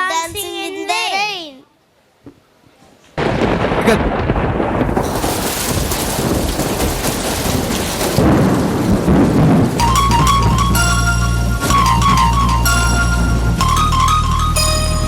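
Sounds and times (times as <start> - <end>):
rolling thunder: 3.2 - 14.1
heavy rain: 3.2 - 15.0
music with bass and melody: 9.8 - 15.0.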